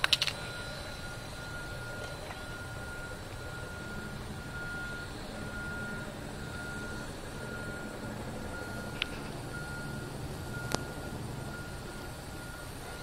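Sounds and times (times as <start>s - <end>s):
sharp clicks: 0.0s - 0.4s
rc helicopter humming: 0.0s - 13.0s
thin high tone: 0.3s - 13.0s.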